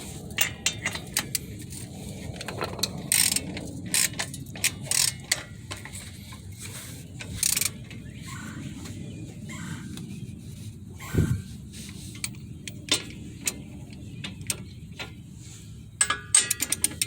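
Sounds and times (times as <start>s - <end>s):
ratchet wrench clicking: 3.1s - 5.8s.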